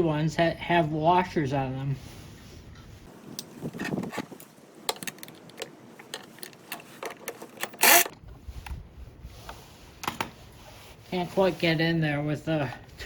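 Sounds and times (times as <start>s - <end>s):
wrench and socket clicking: 4.9s - 8.2s.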